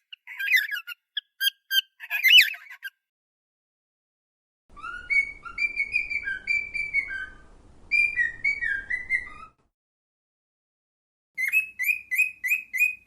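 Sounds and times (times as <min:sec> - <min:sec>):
cockatiel whistling a tune: 0:00.0 - 0:02.9, 0:04.8 - 0:09.6, 0:11.4 - 0:13.0.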